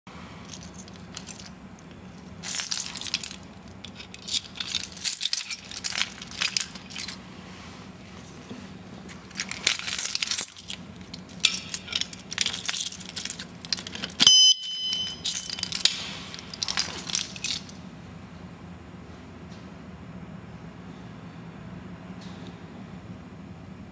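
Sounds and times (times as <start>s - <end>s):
metal lock clinking and rattling: 0.5s - 7.2s, 9.1s - 17.8s
high electronic alarm beep: 14.2s - 15.2s.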